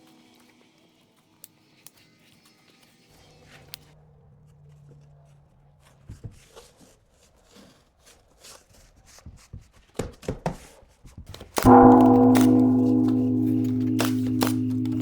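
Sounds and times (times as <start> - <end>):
faint low hum: 11.7 - 15.0.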